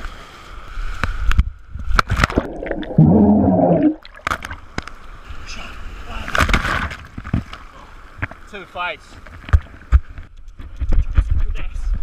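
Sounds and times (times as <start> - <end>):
sea water splashing and gurgling: 2.1 - 4.8.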